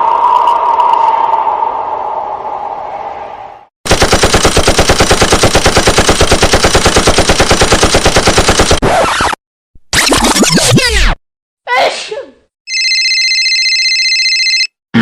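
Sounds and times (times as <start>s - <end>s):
machine gun firing: 3.9s - 8.9s.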